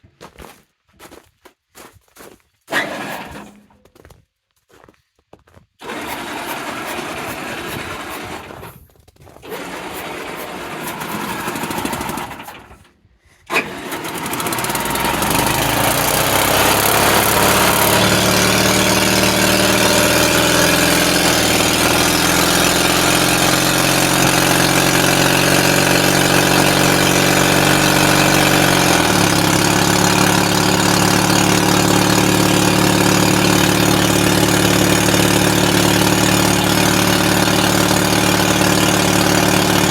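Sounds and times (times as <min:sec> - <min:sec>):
engine cranking: 0:02.7 - 0:03.9, 0:05.8 - 0:39.9
engine running steadily: 0:05.8 - 0:08.7, 0:09.4 - 0:12.9, 0:13.5 - 0:39.9.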